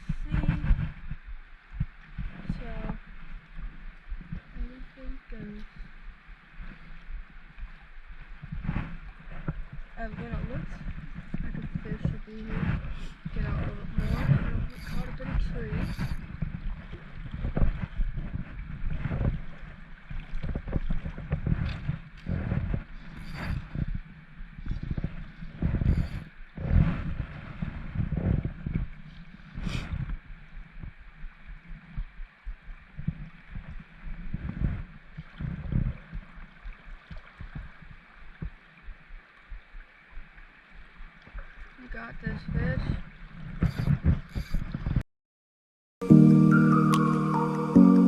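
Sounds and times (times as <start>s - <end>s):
wind buffeting microphone: 0.0s - 3.1s, 8.3s - 36.7s, 41.9s - 45.0s.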